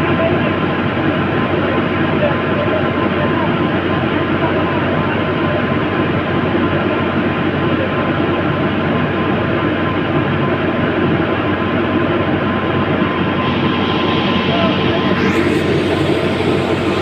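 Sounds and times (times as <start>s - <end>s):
faint steady whine: 12.0s - 17.0s.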